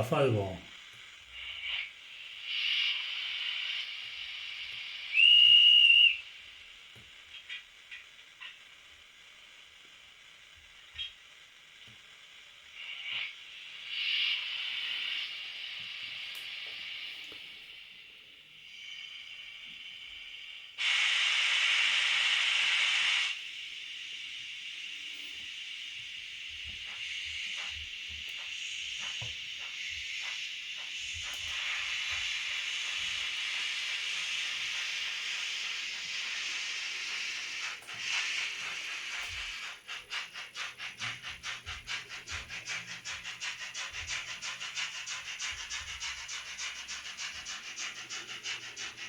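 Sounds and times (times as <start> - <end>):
faint short steam puffs: 0.0 - 7.6, 11.9 - 49.0
steam hiss: 0.0 - 49.0
steam whistle: 1.4 - 6.4.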